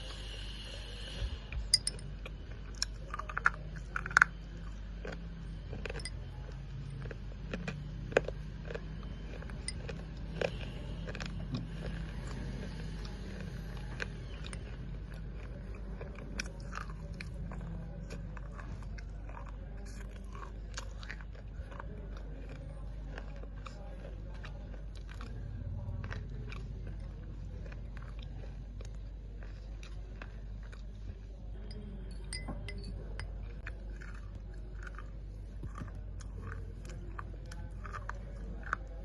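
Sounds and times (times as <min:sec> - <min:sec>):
person chewing with gritty crunches: 0:00.0 - 0:39.0.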